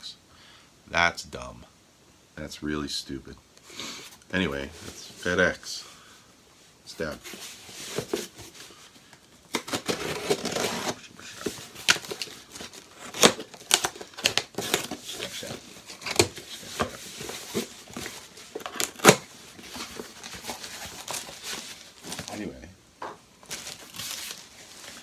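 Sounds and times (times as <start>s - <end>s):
cardboard crinkling: 7.0s - 22.5s, 23.4s - 25.0s
packing tape ripping: 9.5s - 11.0s, 11.6s - 22.4s.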